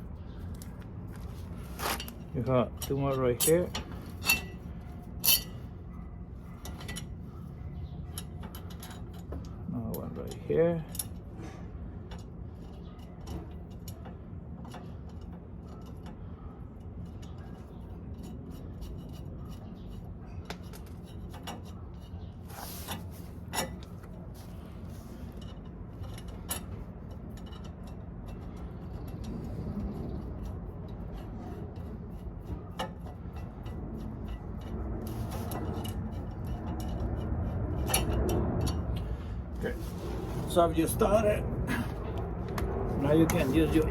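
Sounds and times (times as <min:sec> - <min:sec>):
steady low hum: 0:00.0 - 0:43.9
metallic clicks of washers and nuts: 0:08.1 - 0:11.2.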